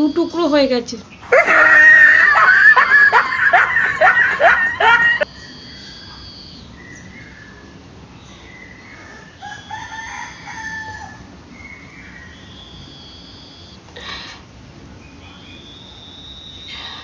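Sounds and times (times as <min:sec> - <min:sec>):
rooster crowing: 0:01.2 - 0:05.3, 0:09.3 - 0:11.3
thin high whistle-like calls: 0:05.4 - 0:07.1, 0:12.1 - 0:13.8, 0:15.4 - 0:17.0.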